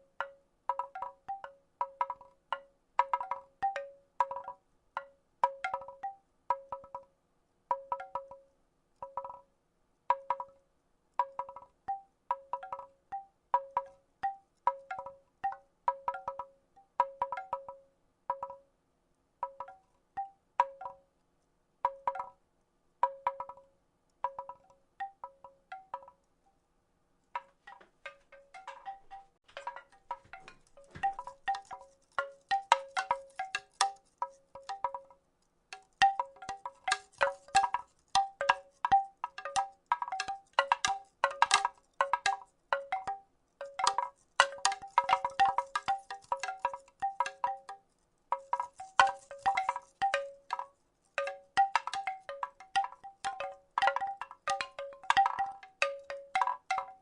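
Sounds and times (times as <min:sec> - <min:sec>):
wooden rattle clacking: 0:00.2 - 0:07.0, 0:27.3 - 0:57.0.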